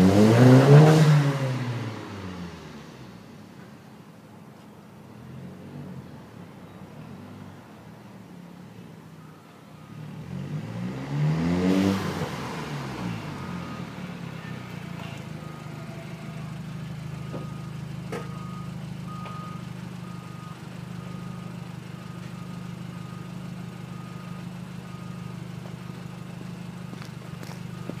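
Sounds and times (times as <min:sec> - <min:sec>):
car engine revving then idling: 0:00.0 - 0:03.2, 0:10.1 - 0:21.0.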